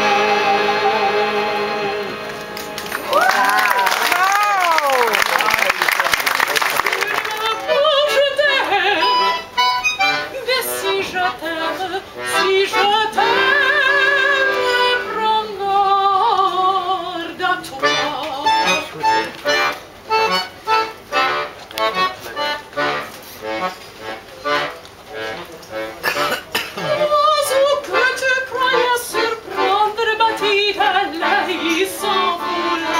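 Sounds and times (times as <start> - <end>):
person singing with vibrato: 0.0 - 2.5, 7.0 - 19.0, 26.8 - 32.9
accordion-like accompaniment: 0.0 - 3.1, 6.4 - 32.9.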